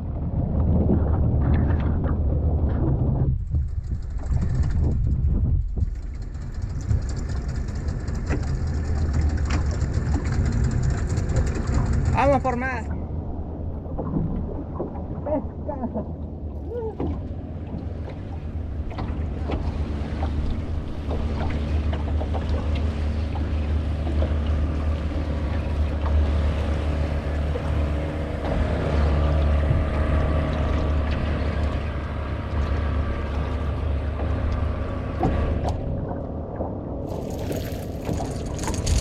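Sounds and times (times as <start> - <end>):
wind noise on microphone: 0.0 - 15.7, 27.7 - 33.7, 34.3 - 39.0
boat motor running: 0.0 - 39.0.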